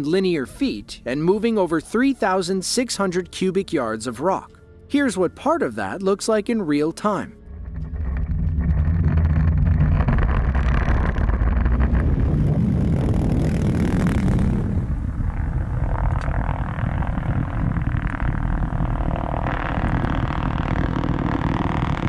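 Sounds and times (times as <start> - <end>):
blasting deep rolling rumble: 7.4 - 22.0.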